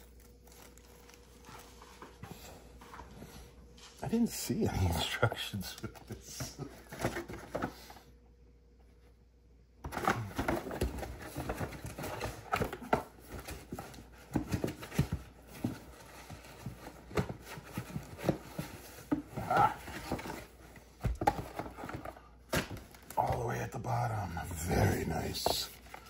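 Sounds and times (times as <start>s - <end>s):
paper packaging rustling: 0.0s - 2.4s, 9.9s - 26.0s.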